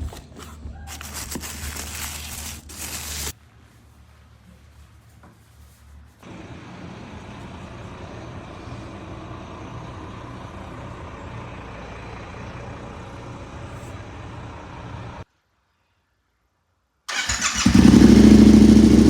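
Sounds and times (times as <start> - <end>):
motorcycle engine idling: 7.1 - 15.2, 17.1 - 19.0.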